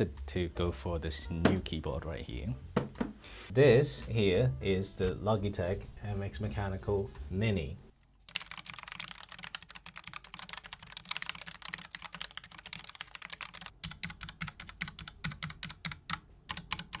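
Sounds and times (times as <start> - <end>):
keyboard typing: 8.3 - 17.0.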